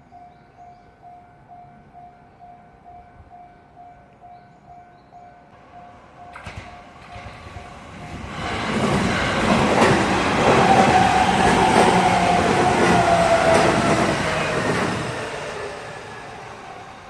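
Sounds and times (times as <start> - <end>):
train rumble: 5.5 - 17.0.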